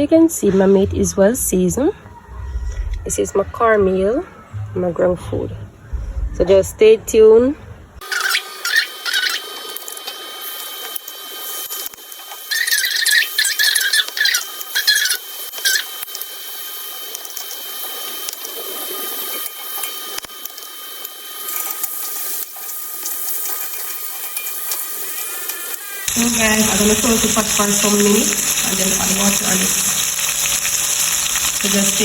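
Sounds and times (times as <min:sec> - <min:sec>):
meat sizzling in a pot: 0:08.0 - 0:32.0
squeaky scraping of stirring: 0:12.5 - 0:16.0.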